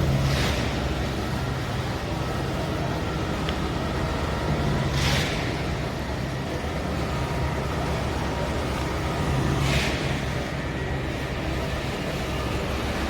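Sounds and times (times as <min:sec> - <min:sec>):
engine rumbling: 0:00.0 - 0:13.0.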